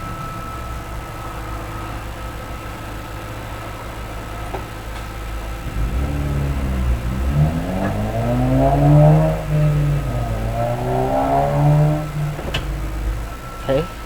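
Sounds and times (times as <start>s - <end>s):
convertible top motor humming: 0.0s - 14.0s
motor whine shifting in pitch: 5.6s - 14.0s.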